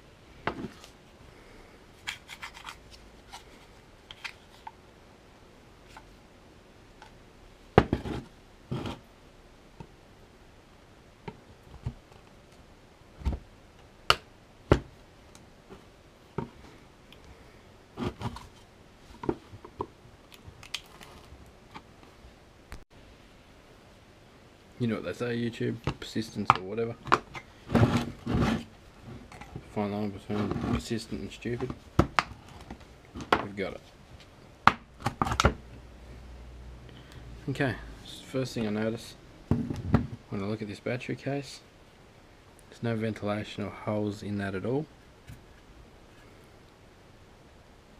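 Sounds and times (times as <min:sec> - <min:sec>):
plastic parts scraping and clicking: 0:02.0 - 0:04.8.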